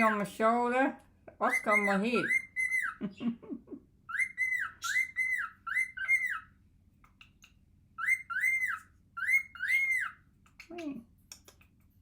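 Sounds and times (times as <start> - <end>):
cockatiel whistling: 1.4 - 3.0, 4.1 - 6.6, 8.0 - 10.2.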